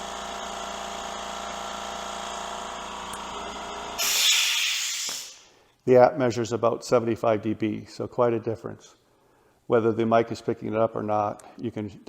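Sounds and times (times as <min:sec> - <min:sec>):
air compressor humming: 0:00.0 - 0:05.6
air hiss burst: 0:04.0 - 0:05.6.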